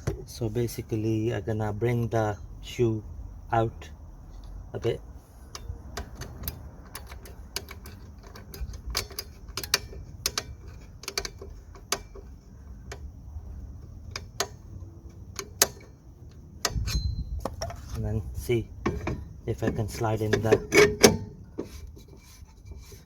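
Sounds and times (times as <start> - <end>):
brake adjuster metallic clicks: 5.4 - 22.9.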